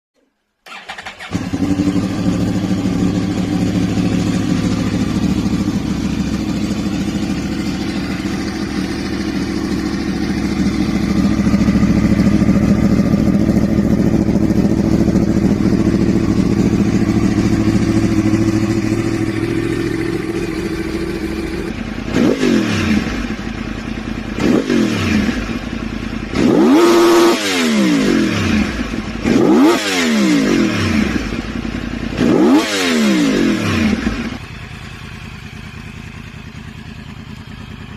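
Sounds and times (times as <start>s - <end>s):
motorcycle engine idling: 0.7s - 37.9s
engine revving throttle blips: 14.6s - 23.3s.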